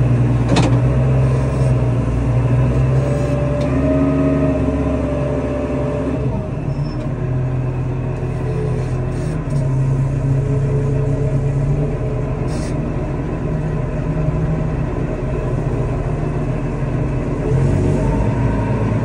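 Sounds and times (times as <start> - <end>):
tractor engine running under load: 0.0 - 19.0.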